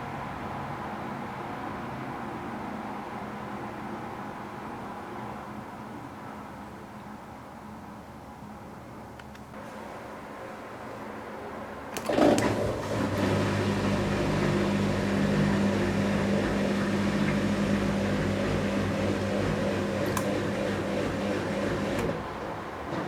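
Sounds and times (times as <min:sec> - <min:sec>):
washing machine electrical hum: 0:00.0 - 0:23.0
washing machine switch click: 0:20.0 - 0:20.4.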